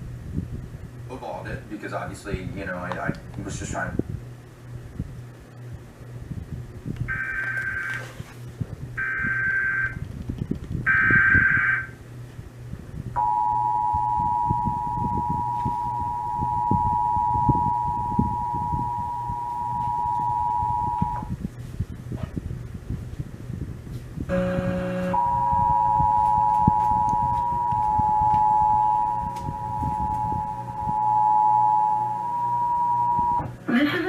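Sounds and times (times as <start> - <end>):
two-tone attention signal: 7.1 - 8.0, 9.0 - 10.0, 13.2 - 21.3, 24.3 - 33.5.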